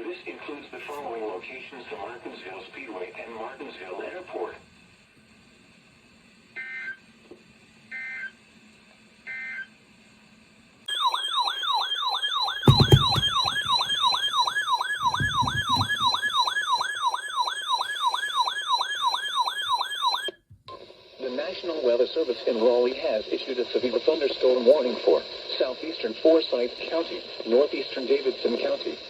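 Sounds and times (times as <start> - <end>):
thump: 12.7 - 14.0, 15.0 - 16.2
warbling electronic alert tone: 15.0 - 16.4.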